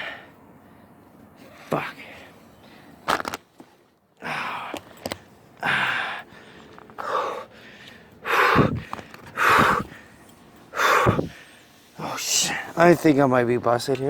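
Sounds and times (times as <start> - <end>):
man gasping for breath: 5.6 - 11.6.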